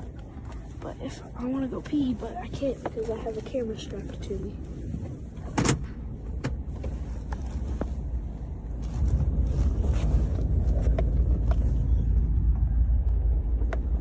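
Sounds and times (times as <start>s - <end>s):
vehicle engine and road rumble: 0.0s - 14.0s.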